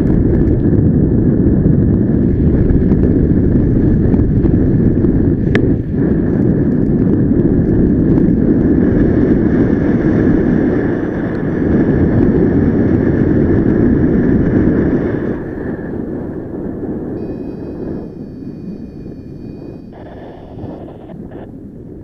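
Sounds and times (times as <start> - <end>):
wind buffeting microphone: 0.0 - 22.0
steady higher hum: 17.1 - 22.0.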